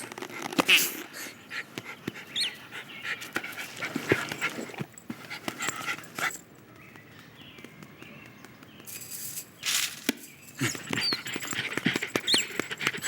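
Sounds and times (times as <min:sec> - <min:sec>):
dog panting: 0:00.2 - 0:06.5, 0:10.6 - 0:13.0.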